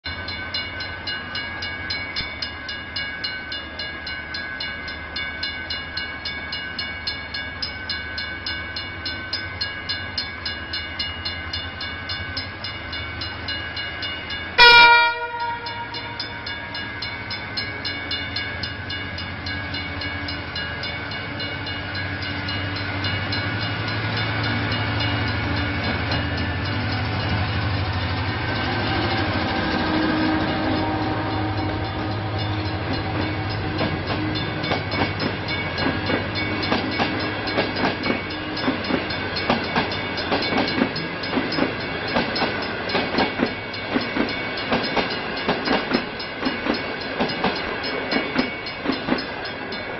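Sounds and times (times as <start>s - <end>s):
train rumble: 0.1s - 49.9s
warning bell ringing: 0.1s - 49.9s
train horn blast: 14.6s - 16.4s, 28.6s - 34.7s.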